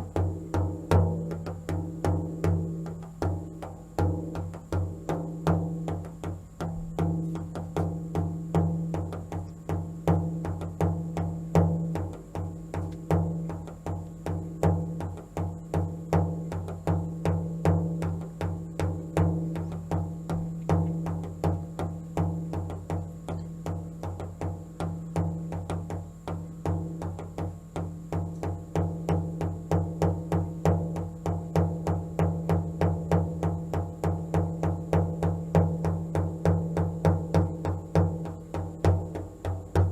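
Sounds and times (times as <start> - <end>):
hand drum beating fast rhythm: 0.0 - 39.9.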